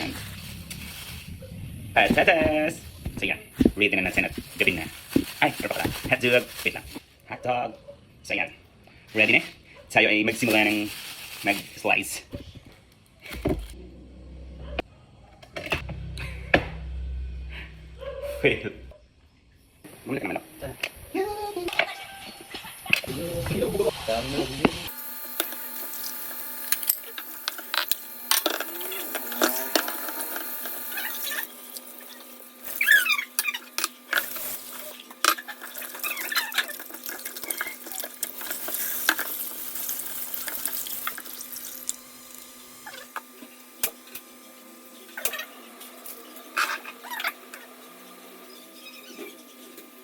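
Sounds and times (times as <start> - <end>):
water running in sink: 22.8 - 43.2.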